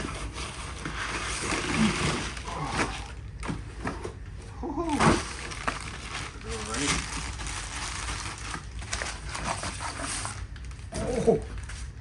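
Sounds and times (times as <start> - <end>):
cardboard box rustling: 4.9 - 11.8.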